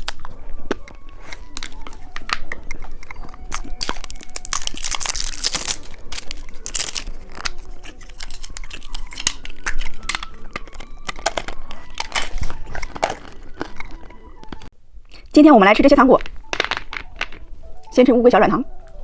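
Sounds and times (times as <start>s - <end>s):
plastic packaging crinkling: 0.0s - 14.7s.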